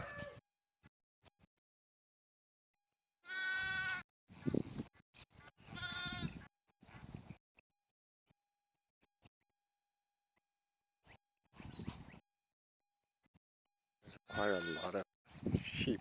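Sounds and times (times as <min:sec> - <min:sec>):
sheep and goats bleating: 0:03.2 - 0:04.0, 0:05.7 - 0:06.5, 0:14.2 - 0:15.0.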